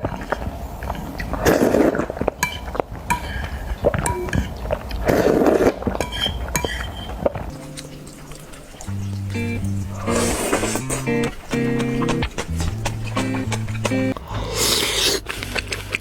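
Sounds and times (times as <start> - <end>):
background music: 7.5 - 14.2
utensils clinking against bowl: 7.5 - 14.2.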